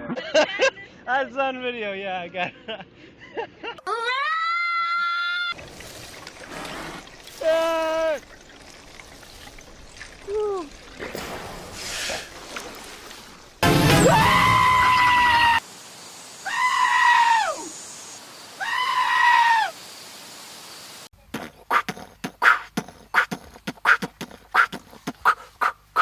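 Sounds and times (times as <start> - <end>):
goat screaming: 16.4 - 17.7, 18.6 - 19.7.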